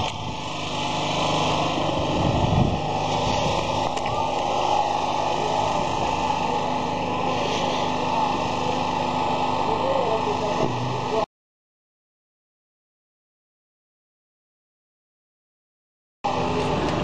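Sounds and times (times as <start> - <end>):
small motor humming: 0.0 - 11.3, 16.3 - 17.0.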